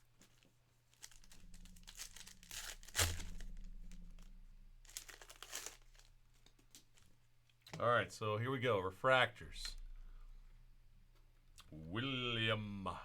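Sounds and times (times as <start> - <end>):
wrapper tearing and crinkling: 0.3 - 7.2.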